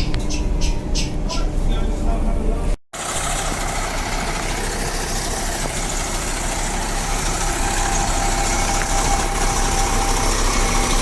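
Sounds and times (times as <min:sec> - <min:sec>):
bus engine idling: 0:00.0 - 0:11.0.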